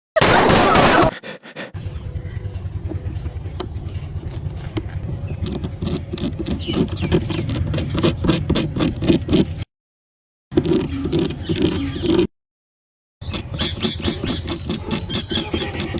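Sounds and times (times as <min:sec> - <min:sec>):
steady low rumble: 0:01.8 - 0:05.9
needle scratching candy: 0:03.0 - 0:09.6, 0:10.5 - 0:12.3, 0:13.2 - 0:15.9.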